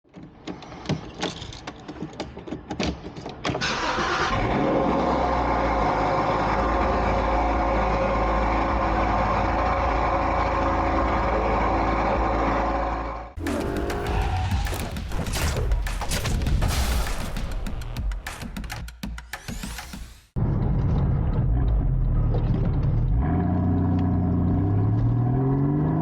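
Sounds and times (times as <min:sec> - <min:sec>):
car engine starting and idling: 0:03.6 - 0:15.2.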